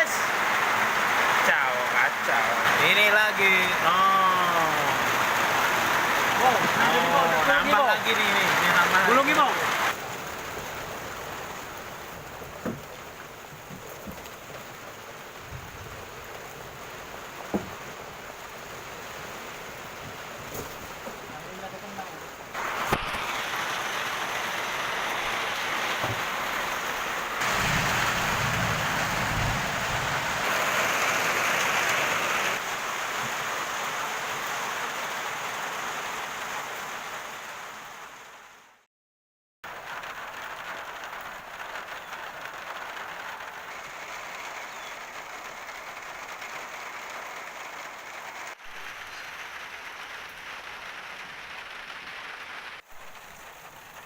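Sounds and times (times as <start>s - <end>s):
steady rain pouring: 0.0s - 38.9s, 39.6s - 54.0s.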